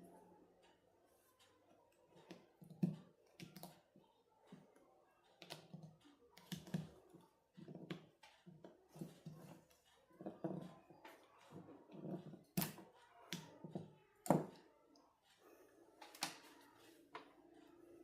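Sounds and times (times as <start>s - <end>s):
small tools clicking and tapping: 1.4s - 15.4s.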